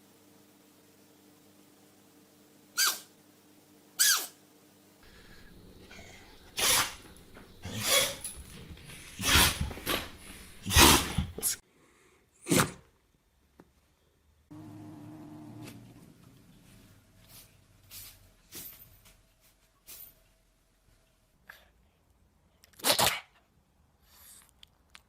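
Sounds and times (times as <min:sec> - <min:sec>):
pets sneezing: 0:05.1 - 0:11.6.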